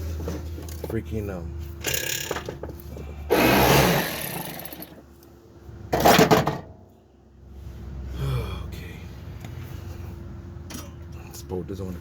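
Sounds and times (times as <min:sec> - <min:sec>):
electric ratchet running: 0:01.8 - 0:02.4, 0:03.3 - 0:05.0.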